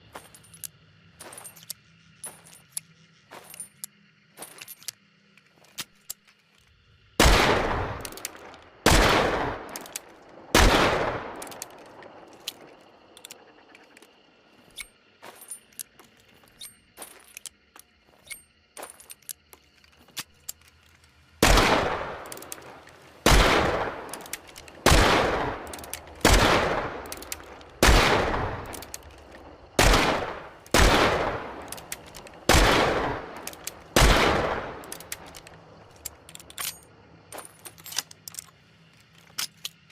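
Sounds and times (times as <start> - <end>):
light clicks and ticks: 27.0 - 27.8, 34.8 - 39.9.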